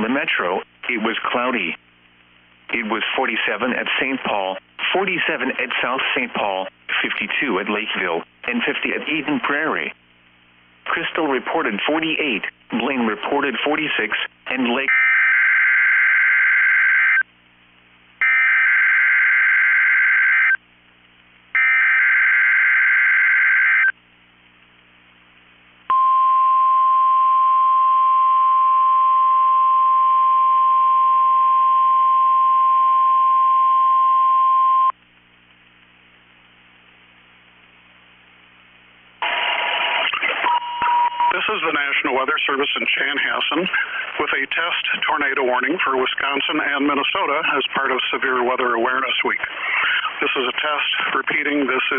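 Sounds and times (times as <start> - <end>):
voice speaking: 10.9 - 15.0.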